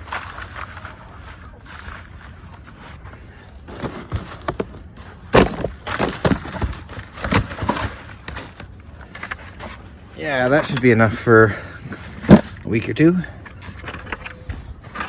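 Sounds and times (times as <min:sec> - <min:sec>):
objects knocking and thudding: 0:03.6 - 0:09.8, 0:11.9 - 0:12.6.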